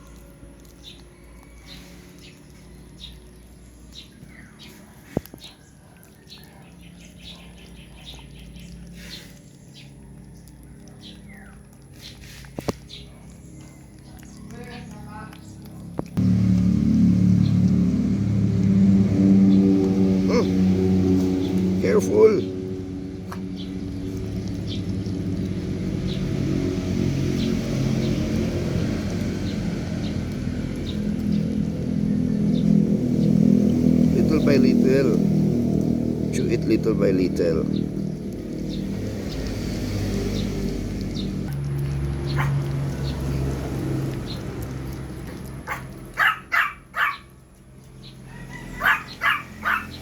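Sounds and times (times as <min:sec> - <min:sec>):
engine running low rumble: 0:00.0 - 0:50.0
low steady hum: 0:12.8 - 0:48.2
puppy yipping: 0:42.3 - 0:42.6, 0:45.4 - 0:47.4, 0:48.4 - 0:50.0.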